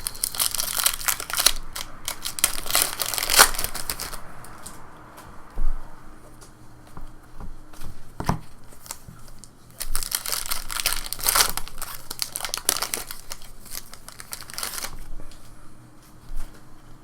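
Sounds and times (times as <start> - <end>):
wrapper tearing and crinkling: 0.0 - 4.7, 8.8 - 15.1.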